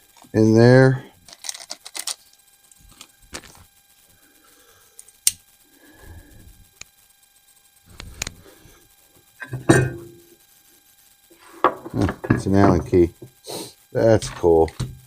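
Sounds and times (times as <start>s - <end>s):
small metal parts clicking: 1.3s - 2.4s
metal clunk: 9.4s - 10.2s.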